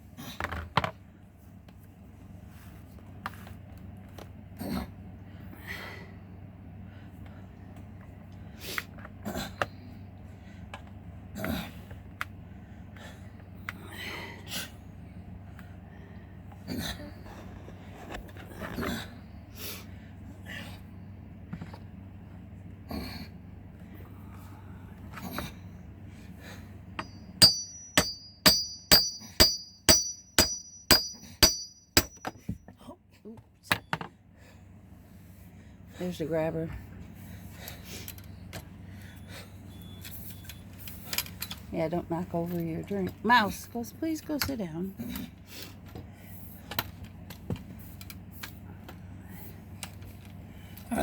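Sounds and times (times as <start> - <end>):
hammer striking metal: 27.0 - 32.6
hand tools knocking on metal: 27.0 - 32.6.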